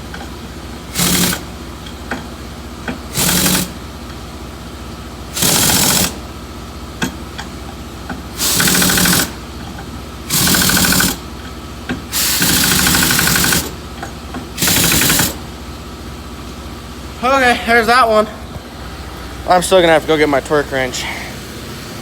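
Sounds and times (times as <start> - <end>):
pneumatic impact wrench hammering: 0.0 - 3.8, 5.3 - 6.3, 7.0 - 15.5.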